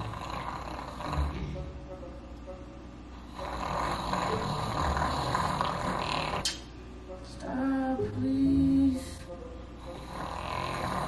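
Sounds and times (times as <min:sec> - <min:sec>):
man fake snoring: 0:00.0 - 0:01.6, 0:03.3 - 0:06.5, 0:09.8 - 0:11.0.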